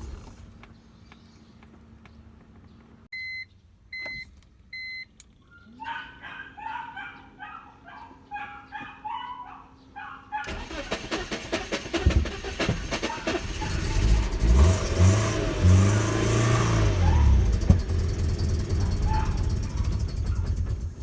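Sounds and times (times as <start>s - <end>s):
car engine cranking and revving: 0.0s - 0.7s, 10.4s - 21.0s.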